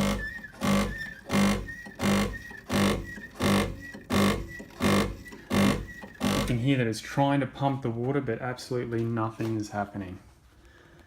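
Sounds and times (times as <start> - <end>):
espresso machine pump buzzing: 0.0 - 6.6
faint thin whistle: 0.1 - 6.2.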